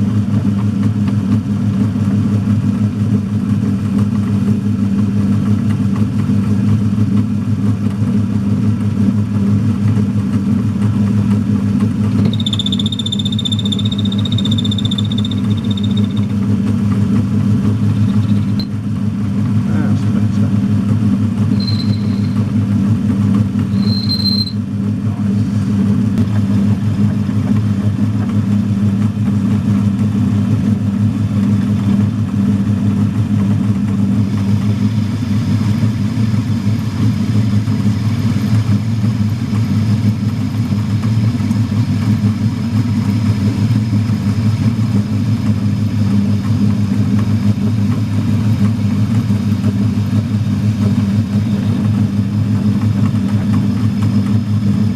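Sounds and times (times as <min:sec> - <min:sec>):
metal lathe humming: 0:12.0 - 0:16.6
high whine: 0:12.0 - 0:18.9, 0:21.4 - 0:22.8.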